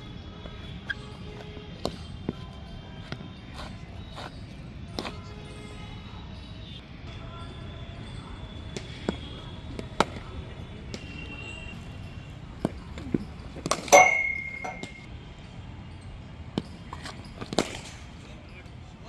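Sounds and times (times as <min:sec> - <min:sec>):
cricket ball knocking on bat: 0:00.6 - 0:05.2, 0:12.7 - 0:15.0.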